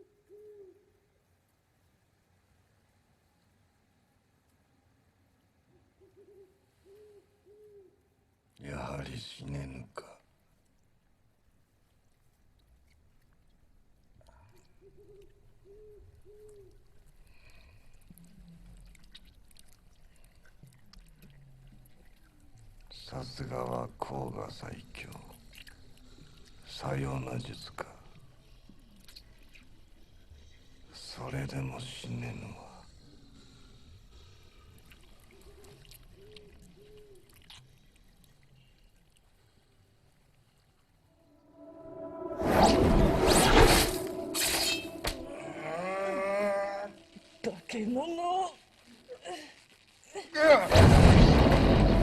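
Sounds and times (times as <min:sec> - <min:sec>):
faint owl hooting: 0:00.0 - 0:01.2, 0:05.7 - 0:08.2, 0:14.3 - 0:19.2
soft tones: 0:41.2 - 0:47.7.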